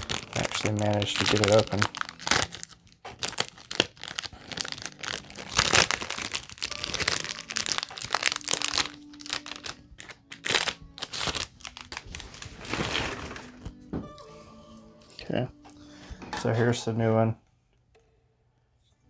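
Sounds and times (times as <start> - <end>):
plastic packaging crinkling: 0.0 - 13.8.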